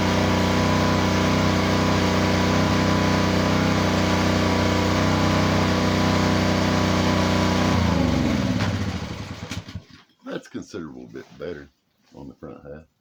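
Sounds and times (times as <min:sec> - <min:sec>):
pressure washer engine running: 0:00.0 - 0:09.9.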